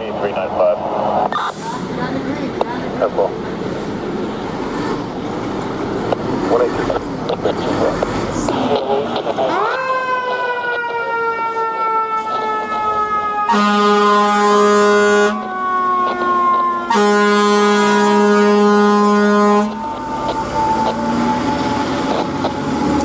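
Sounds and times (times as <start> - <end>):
fire truck siren falling: 8.4 - 23.0
air horn blasts: 13.4 - 15.5, 16.2 - 19.9.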